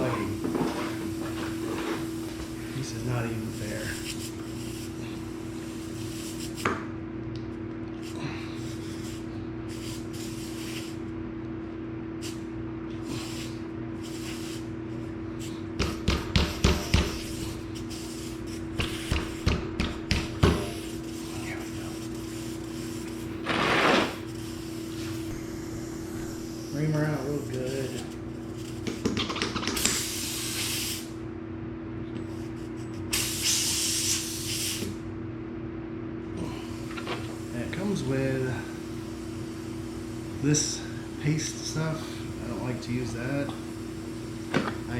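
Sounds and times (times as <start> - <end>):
steady hum: 0.0 - 44.9
short air hiss: 8.0 - 11.0, 12.2 - 14.7, 29.9 - 31.2, 33.1 - 35.0
hand tools knocking on tire: 18.8 - 20.7.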